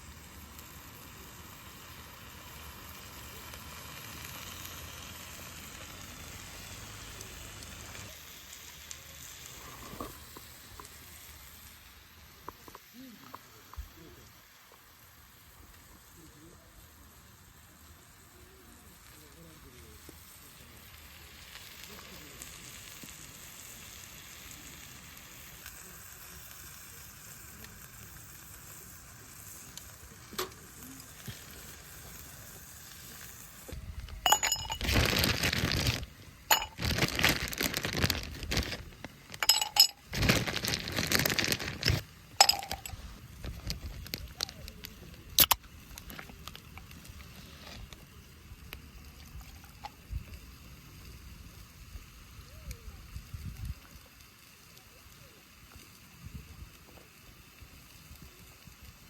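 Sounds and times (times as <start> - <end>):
meat sizzling in a pan: 0.0 - 59.0
metal clinks and clicks: 34.2 - 35.3, 36.5 - 37.3, 39.4 - 43.0.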